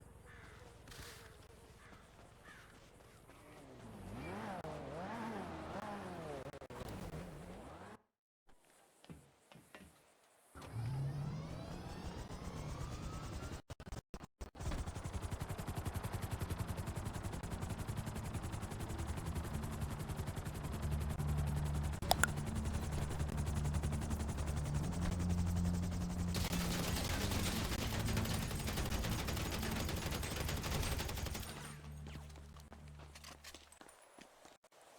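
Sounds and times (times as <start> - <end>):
aircraft engine pulsing: 15.1 - 32.9.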